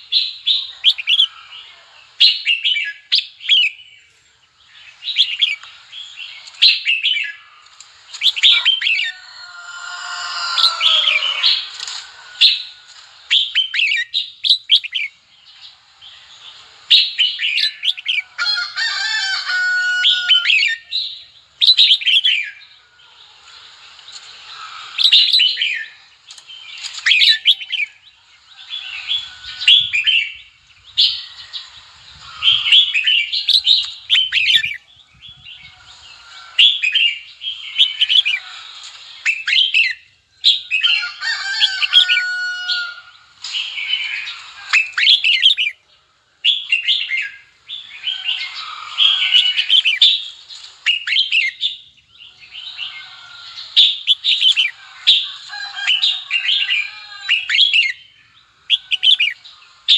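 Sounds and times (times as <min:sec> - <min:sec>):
bulbul singing whistles: 0:58.7 - 0:59.4.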